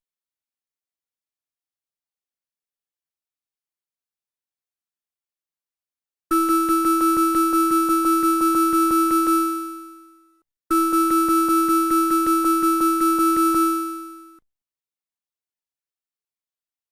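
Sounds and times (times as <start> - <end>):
pulsing emergency alert alarm: 6.3 - 10.0, 10.7 - 14.4.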